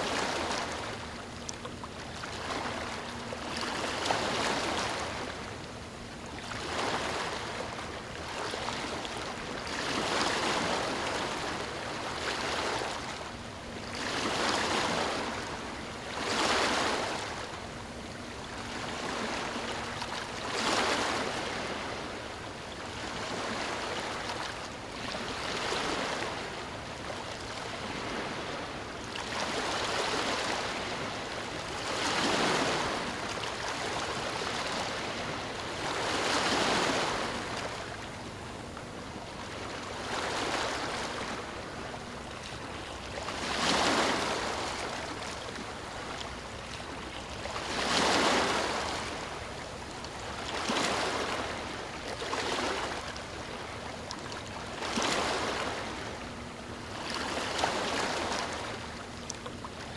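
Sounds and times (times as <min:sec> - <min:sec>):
ocean waves breaking on beach: 0:18.6 - 0:59.9.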